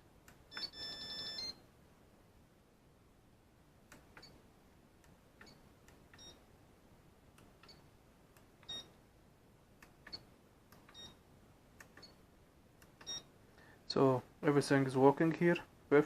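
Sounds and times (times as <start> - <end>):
high beeps: 0.5 - 1.6
faint switch clicks: 3.9 - 4.4.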